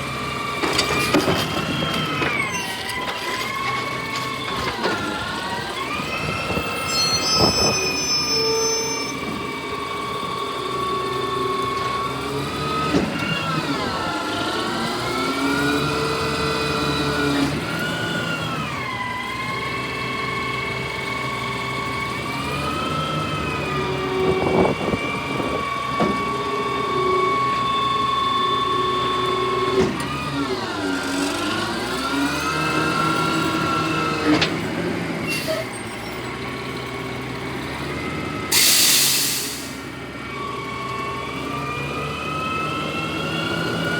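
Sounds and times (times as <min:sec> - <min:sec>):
garbage truck engine running: 0:00.0 - 0:43.9
loud air hiss: 0:38.5 - 0:39.9.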